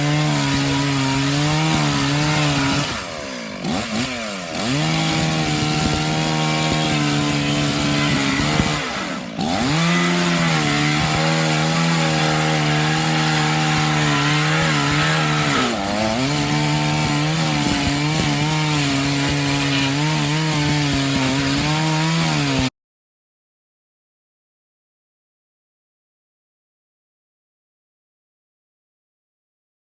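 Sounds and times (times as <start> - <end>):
chainsaw cutting wood: 0.0 - 22.7.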